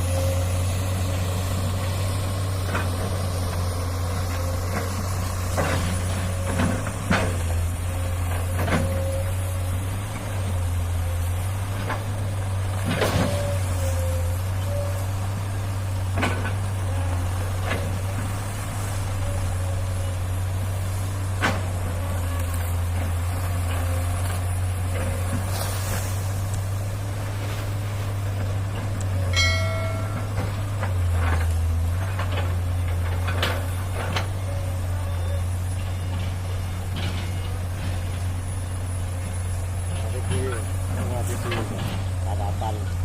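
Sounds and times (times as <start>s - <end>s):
heavy diesel engine running: 0.0s - 43.0s.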